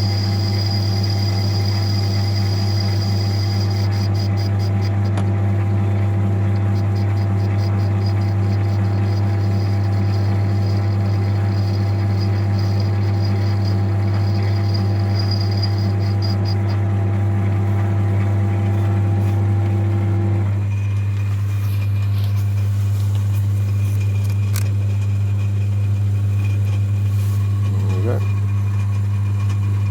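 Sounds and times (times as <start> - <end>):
boring tool cutting metal: 0.0 - 5.2, 6.5 - 16.7
lathe running with low hum: 0.0 - 29.9.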